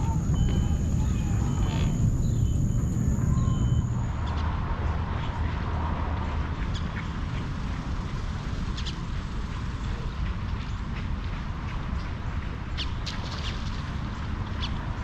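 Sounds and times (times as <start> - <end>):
steady low rumble: 0.0 - 8.7.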